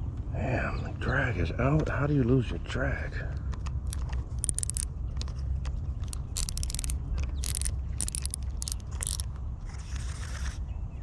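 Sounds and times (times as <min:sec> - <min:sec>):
fishing reel clicking and whirring: 0:03.9 - 0:04.9, 0:06.1 - 0:09.3.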